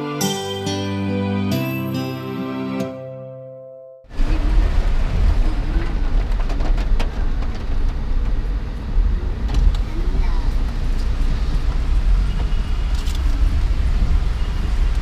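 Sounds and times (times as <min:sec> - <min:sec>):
background music: 0:00.0 - 0:04.1
car road rumble: 0:04.1 - 0:15.0
wind noise: 0:04.1 - 0:15.0.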